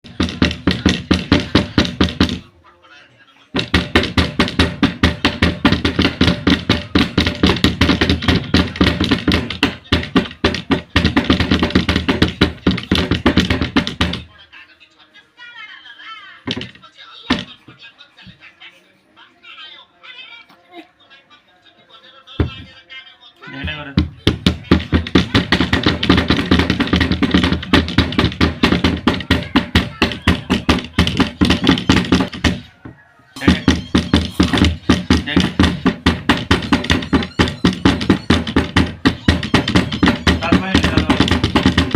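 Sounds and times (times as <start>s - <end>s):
children drumming on hard object: 0.0s - 2.5s, 3.5s - 14.3s, 16.4s - 17.6s, 23.5s - 41.9s.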